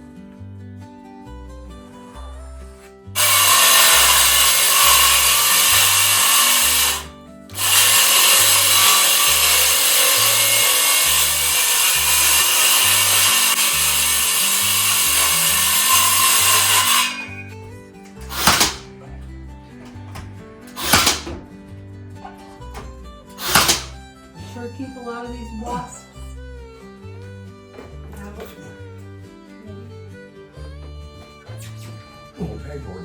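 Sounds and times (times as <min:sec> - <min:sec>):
power tool running: 0:03.2 - 0:21.6, 0:22.2 - 0:24.3.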